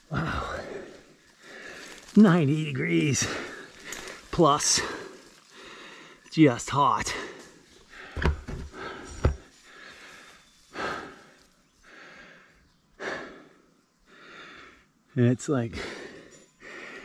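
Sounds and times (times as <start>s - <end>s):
man breathing hard: 0.1s - 2.1s, 3.2s - 6.2s, 7.1s - 15.1s, 15.8s - 17.0s
dull thumps: 8.0s - 9.5s.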